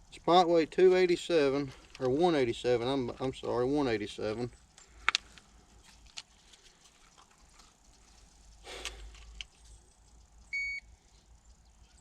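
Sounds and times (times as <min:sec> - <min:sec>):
small clicks and knocks: 0:04.7 - 0:10.4.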